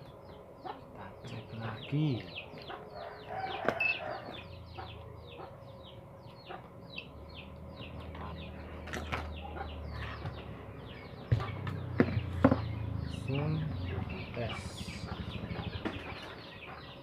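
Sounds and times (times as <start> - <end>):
low hum: 0.0 - 16.8
birds chirping: 0.0 - 17.0.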